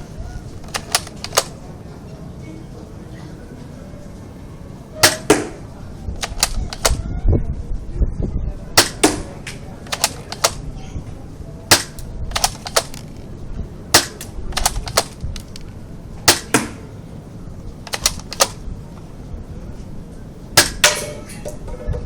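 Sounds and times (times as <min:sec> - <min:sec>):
airsoft gun firing: 0:00.6 - 0:01.6, 0:05.0 - 0:05.5, 0:06.2 - 0:07.0, 0:08.8 - 0:09.3, 0:09.9 - 0:10.6, 0:11.7 - 0:13.2, 0:14.0 - 0:15.7, 0:16.3 - 0:16.9, 0:17.9 - 0:18.6, 0:20.6 - 0:21.1.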